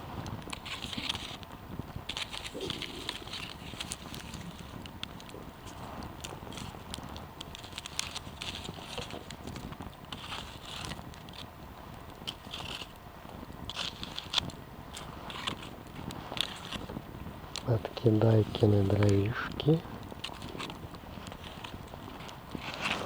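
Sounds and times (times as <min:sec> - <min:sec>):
campfire crackling and popping: 0:00.0 - 0:23.0.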